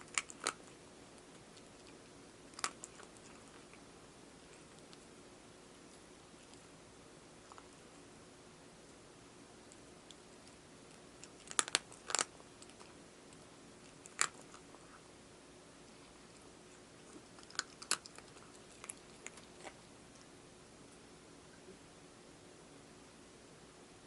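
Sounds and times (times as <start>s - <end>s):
cat crunching dry food: 0.0s - 5.2s, 7.4s - 8.0s, 9.6s - 15.0s, 15.8s - 20.3s.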